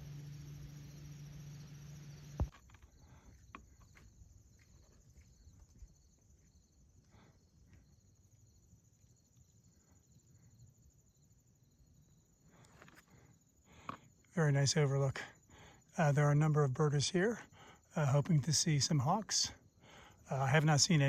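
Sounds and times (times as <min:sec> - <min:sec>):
low engine hum: 0:00.0 - 0:04.0
crickets trilling: 0:00.0 - 0:21.0.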